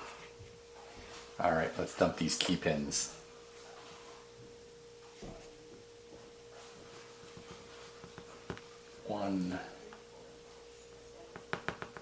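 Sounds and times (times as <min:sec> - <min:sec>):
faint steady hum: 0:00.0 - 0:12.0
soft knock: 0:11.4 - 0:12.0.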